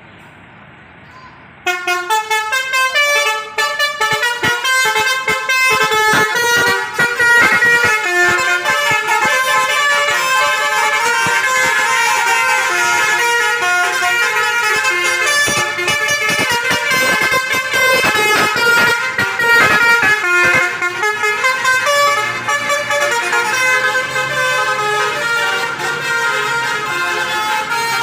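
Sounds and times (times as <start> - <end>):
multi-tone bus horns playing a tune: 1.6 - 28.0
rapid sharp knocks: 15.2 - 20.7.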